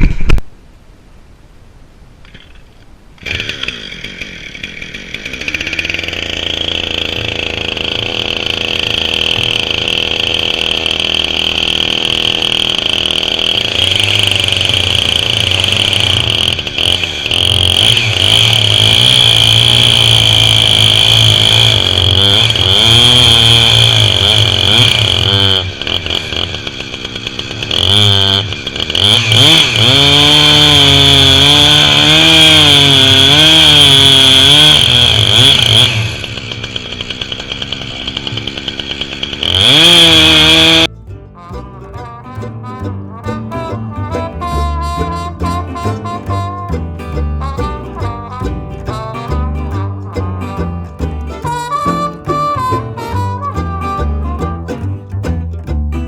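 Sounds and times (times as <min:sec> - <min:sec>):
chainsaw cutting through log: 0:03.2 - 0:40.9.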